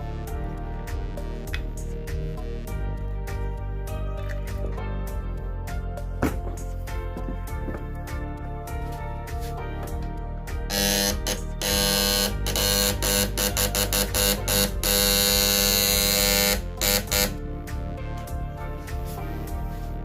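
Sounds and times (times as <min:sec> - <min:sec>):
background music: 0:00.0 - 0:20.0
harsh electrical buzz: 0:10.6 - 0:17.4.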